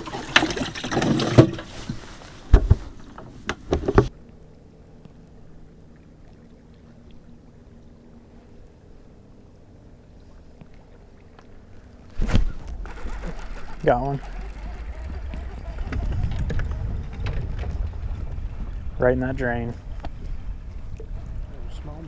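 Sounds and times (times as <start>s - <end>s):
sharp knocks and rustling: 0.0s - 4.1s.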